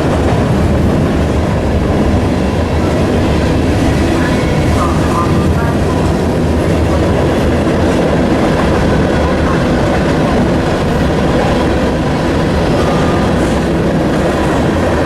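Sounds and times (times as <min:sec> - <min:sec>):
freight train rumbling past: 0:00.0 - 0:15.0.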